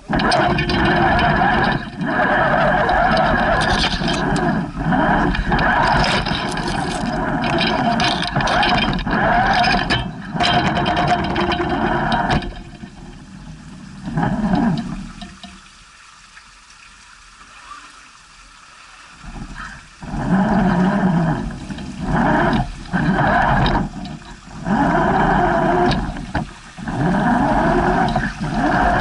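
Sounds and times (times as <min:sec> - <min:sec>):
toy electric motor and gears: 0:00.0 - 0:12.9, 0:19.4 - 0:29.0.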